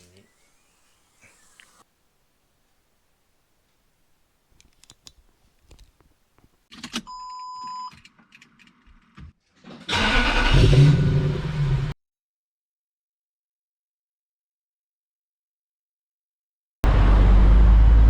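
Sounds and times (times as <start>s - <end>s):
car engine starting and running: 9.6s - 12.0s, 16.8s - 18.0s.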